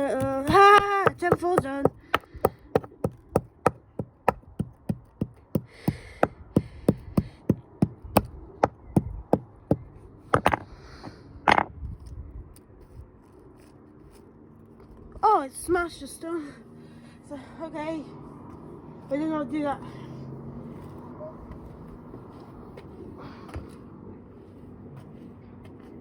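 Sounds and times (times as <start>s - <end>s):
stone knocking hard: 0.1s - 10.7s.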